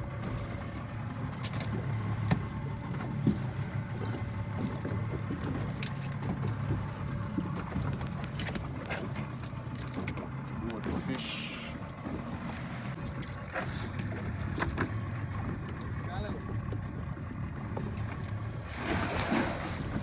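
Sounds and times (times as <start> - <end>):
boat engine humming: 0.0 - 20.0
sharp knocks on boat: 1.2 - 11.2, 11.9 - 17.0.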